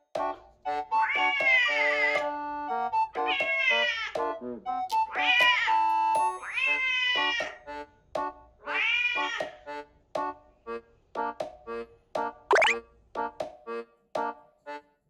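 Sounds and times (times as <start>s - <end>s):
plucked background music: 0.0s - 8.4s, 11.2s - 14.4s
cat meowing: 1.0s - 2.2s, 3.2s - 4.1s, 5.1s - 7.6s, 8.7s - 9.6s.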